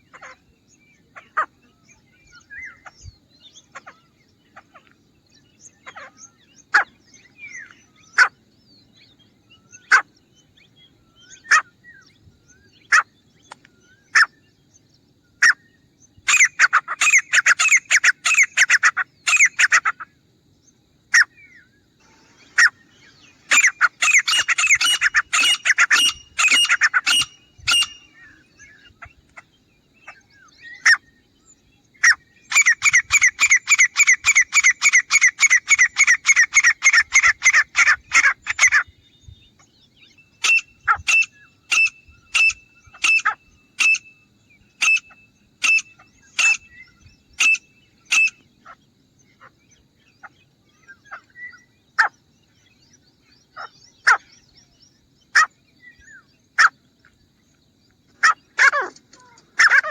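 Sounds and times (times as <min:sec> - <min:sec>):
bird calling: 0:21.2 - 0:52.3, 0:52.9 - 0:56.8, 0:58.1 - 0:59.9.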